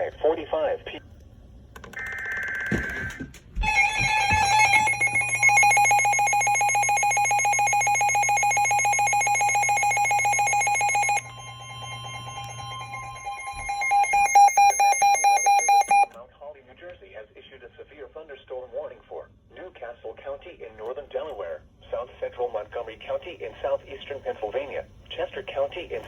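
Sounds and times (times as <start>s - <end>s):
steady electronic tone: 3.6s - 16.1s
fast-pulsing electronic alarm beep: 4.0s - 16.1s.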